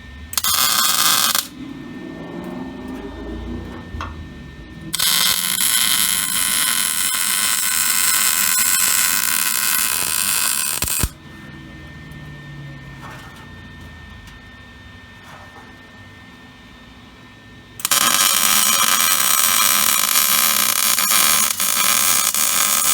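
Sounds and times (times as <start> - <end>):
arc welding sizzling crackle: 0.3 - 1.6, 4.8 - 11.2, 17.8 - 22.9.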